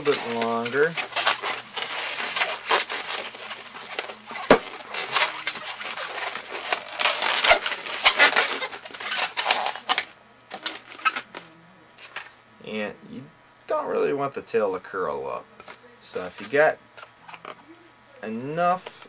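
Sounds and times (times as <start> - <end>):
balloon rubber squeaking: 0.0 - 11.5
balloon snapping: 3.9 - 11.2.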